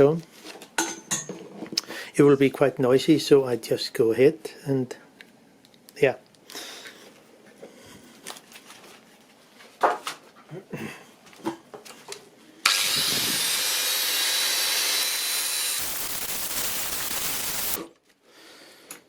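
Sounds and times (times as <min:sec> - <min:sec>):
power grinder grinding steel: 0:12.6 - 0:17.8.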